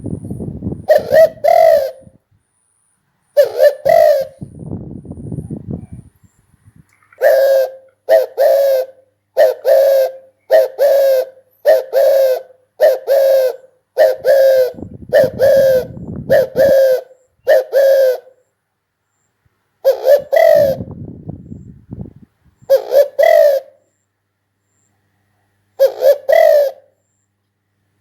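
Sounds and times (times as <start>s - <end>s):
dove cooing: 0.0s - 2.2s, 3.4s - 6.1s, 7.0s - 18.4s, 19.8s - 21.7s, 22.6s - 23.9s, 25.8s - 27.0s.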